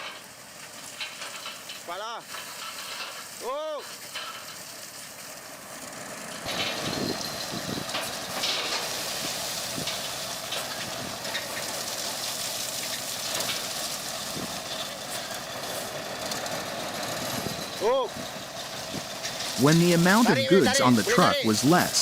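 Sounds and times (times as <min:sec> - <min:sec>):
diesel truck engine running: 0:04.7 - 0:22.0.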